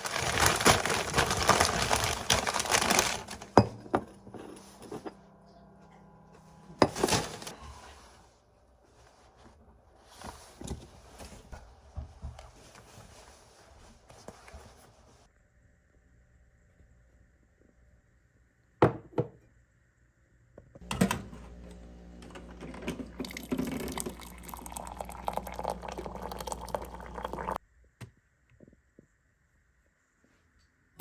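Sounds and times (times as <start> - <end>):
plastic bag crinkling: 0.0 - 3.7.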